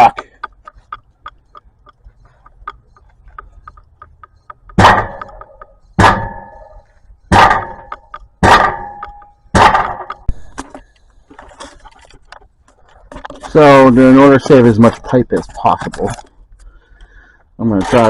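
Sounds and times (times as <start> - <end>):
metal exhaust being struck: 3.6 - 10.3.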